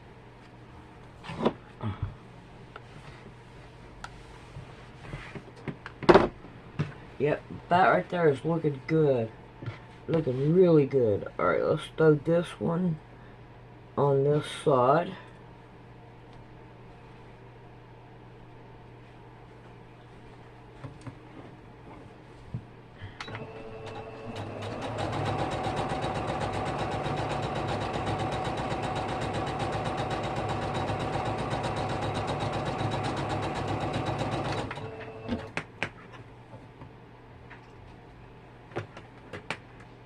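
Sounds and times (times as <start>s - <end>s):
sewing machine stitching: 23.4s - 35.5s.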